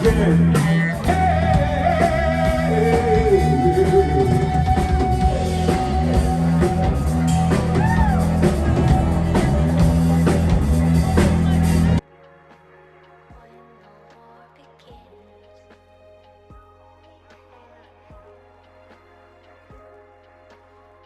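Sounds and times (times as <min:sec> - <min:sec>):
person singing: 0:00.0 - 0:10.4
electric guitar: 0:00.0 - 0:12.0
drums: 0:00.0 - 0:21.0.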